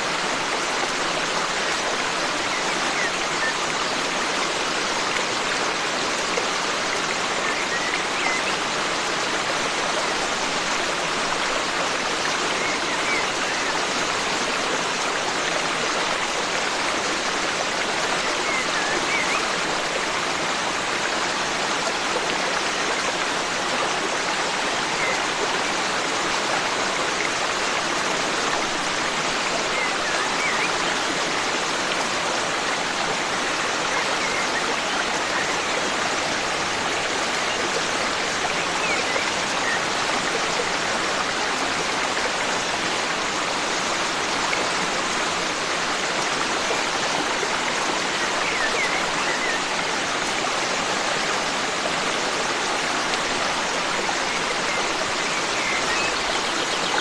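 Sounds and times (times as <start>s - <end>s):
forest stream flowing: 0.0s - 57.0s.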